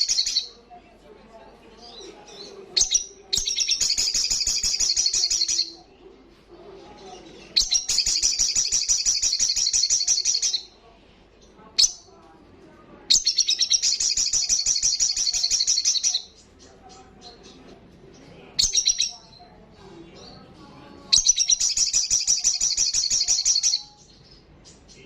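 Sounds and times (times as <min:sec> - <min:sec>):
bird high-pitched rapid trills: 0:00.0 - 0:00.5, 0:02.8 - 0:05.8, 0:07.6 - 0:10.7, 0:13.1 - 0:16.4, 0:18.6 - 0:19.2, 0:21.1 - 0:24.1.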